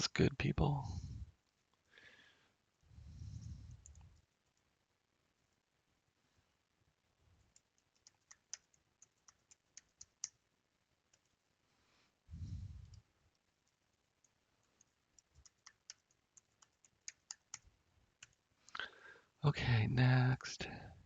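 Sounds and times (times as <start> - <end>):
faint keyboard typing: 3.6 - 4.7, 7.4 - 11.5, 12.8 - 18.9.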